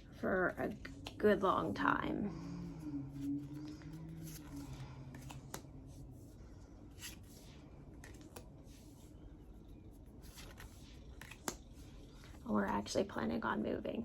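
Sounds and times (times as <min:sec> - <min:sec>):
low hum: 0:00.0 - 0:13.3
cards rustling: 0:03.1 - 0:12.9.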